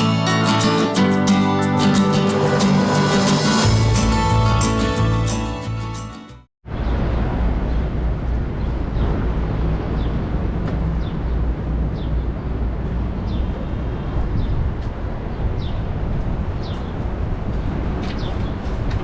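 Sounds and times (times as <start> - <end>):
traffic rumble: 6.7 - 19.0.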